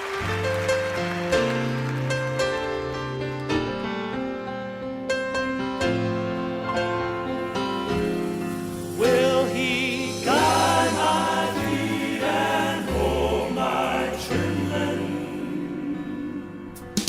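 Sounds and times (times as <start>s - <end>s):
piano accompaniment: 0.0s - 17.0s
male vocal quartet singing: 8.8s - 17.0s.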